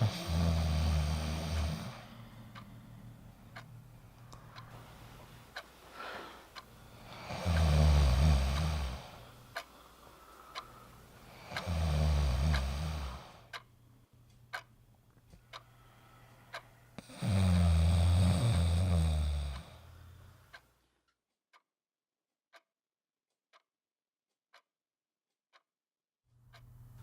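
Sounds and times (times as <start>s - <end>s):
person snoring loudly: 0.0s - 2.2s, 6.9s - 9.3s, 11.3s - 13.4s, 17.0s - 19.9s
faint ticking: 0.0s - 20.8s, 26.4s - 27.0s.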